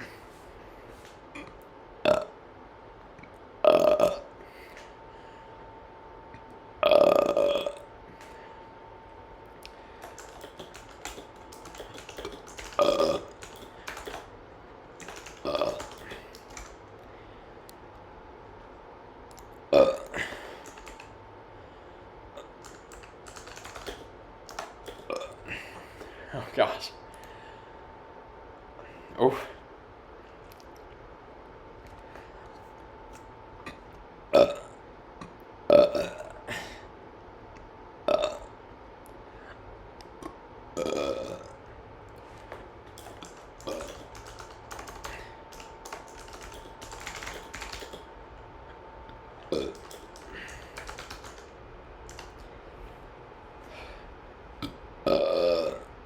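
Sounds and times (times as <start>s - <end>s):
person burping: 1.4s - 2.4s, 3.6s - 4.4s, 6.8s - 7.9s, 11.7s - 13.7s, 15.4s - 16.4s, 19.7s - 20.5s, 25.0s - 25.7s, 33.7s - 34.8s, 35.7s - 36.8s, 38.0s - 38.5s, 40.2s - 41.6s, 49.5s - 49.8s, 54.6s - 55.9s
keyboard typing clicks: 9.6s - 14.4s, 15.0s - 16.8s, 20.2s - 21.1s, 22.4s - 25.2s, 42.9s - 48.1s, 49.5s - 52.5s.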